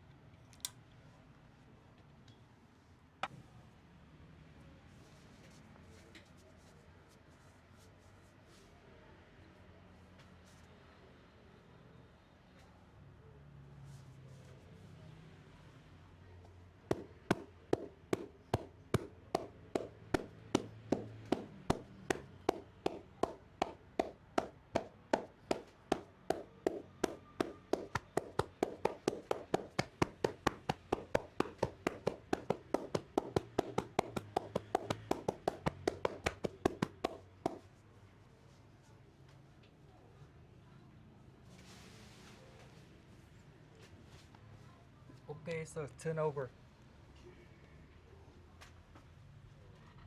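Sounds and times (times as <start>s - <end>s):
hands slapping body: 16.9s - 37.6s.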